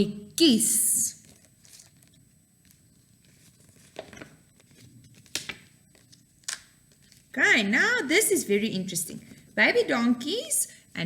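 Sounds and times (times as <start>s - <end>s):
faint clicks and rustles: 1.2s - 7.4s.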